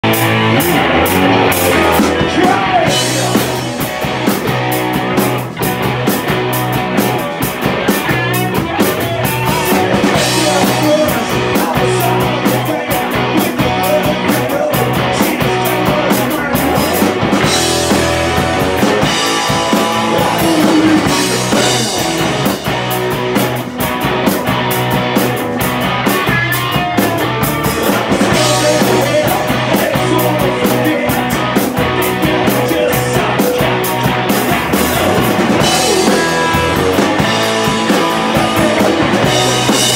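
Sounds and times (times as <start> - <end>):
drum kit beat: 0.0 - 39.9
electric guitars: 0.0 - 39.9
live rock band playing: 0.0 - 39.9.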